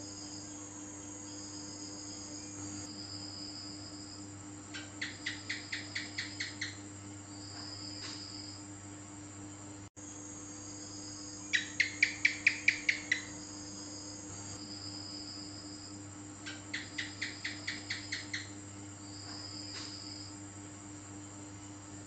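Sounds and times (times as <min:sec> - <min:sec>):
high-pitched background hiss: 0:00.0 - 0:04.4, 0:10.0 - 0:21.7
gecko chirping: 0:04.8 - 0:06.8, 0:11.5 - 0:13.4, 0:16.5 - 0:18.5.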